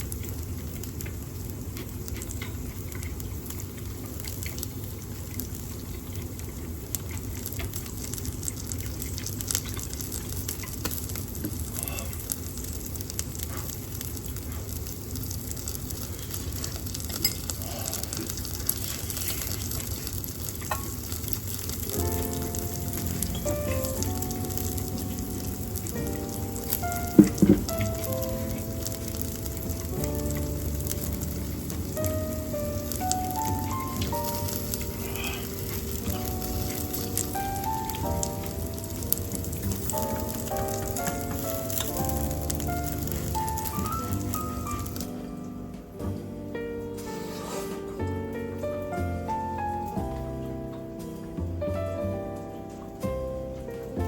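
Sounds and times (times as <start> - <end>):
fat crackling and popping: 0.0 - 47.0
range hood fan hum: 0.0 - 47.0
meat sizzling on a grill: 0.0 - 54.0
musical tones: 21.5 - 47.2.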